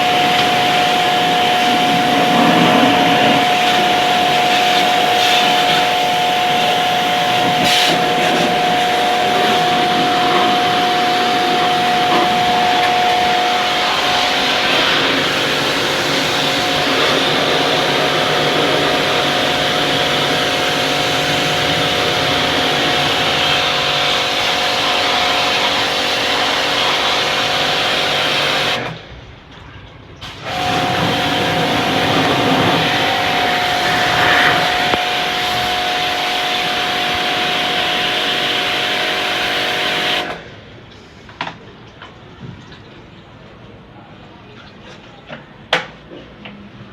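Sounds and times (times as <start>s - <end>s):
water spraying hiss: 0.0s - 23.8s, 30.2s - 38.7s
water pump whining: 0.0s - 29.0s, 30.2s - 40.6s.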